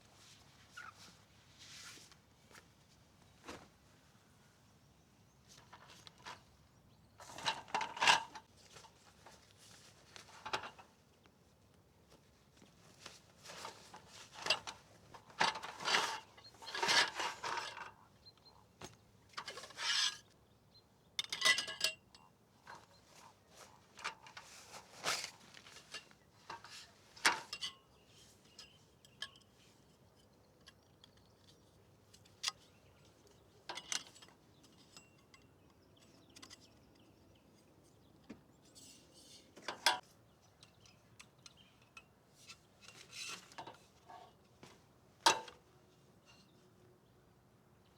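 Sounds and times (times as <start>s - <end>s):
camp gear rustling: 0.0s - 4.5s, 5.4s - 20.2s, 22.6s - 30.1s, 42.4s - 46.8s.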